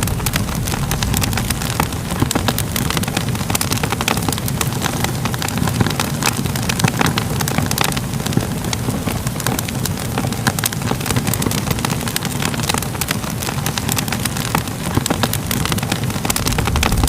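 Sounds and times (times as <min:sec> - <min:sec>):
low rumble: 0:00.0 - 0:04.8, 0:16.2 - 0:17.0
fire crackling: 0:00.0 - 0:17.0.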